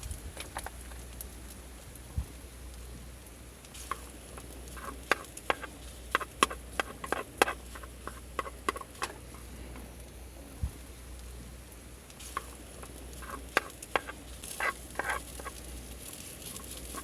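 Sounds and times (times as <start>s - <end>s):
sharp clicks and taps: 3.9s - 9.2s.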